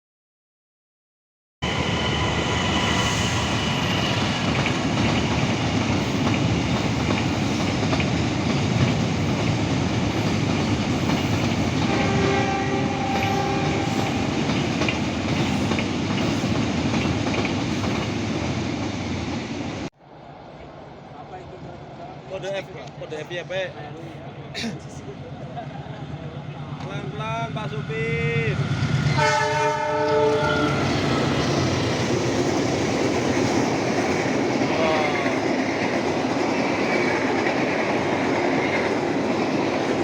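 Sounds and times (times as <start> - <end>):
train rumble and wheel clatter: 1.6 - 40.0
train horn blasts: 11.8 - 14.3, 29.1 - 31.0.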